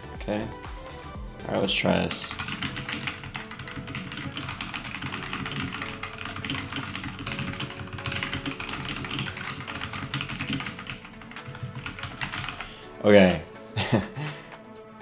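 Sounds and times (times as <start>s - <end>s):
fast typing on keyboard: 1.8s - 12.9s.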